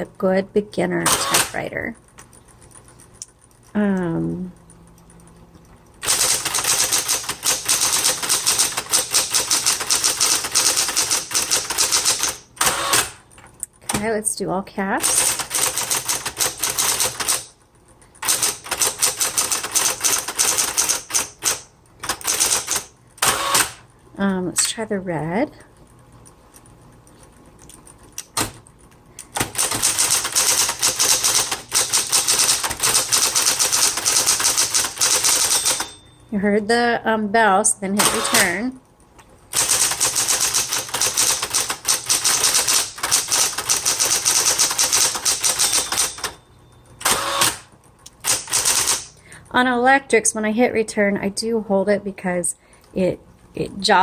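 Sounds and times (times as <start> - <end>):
typewriter keys clacking: 4.6 - 13.5, 15.0 - 22.9, 26.5 - 36.0, 39.5 - 46.4, 48.2 - 49.2.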